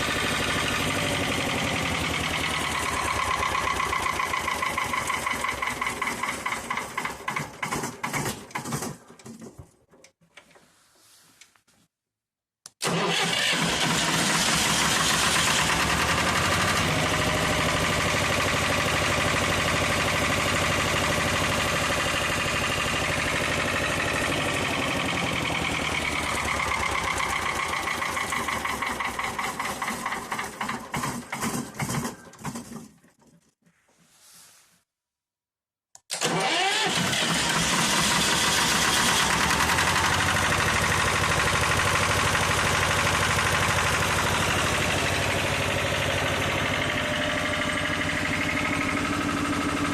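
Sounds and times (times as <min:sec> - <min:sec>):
diesel engine running: 0:00.0 - 0:07.1, 0:12.8 - 0:31.8, 0:36.2 - 0:49.9
engine starting: 0:02.3 - 0:09.6, 0:12.8 - 0:18.4, 0:24.3 - 0:33.6, 0:36.1 - 0:44.2.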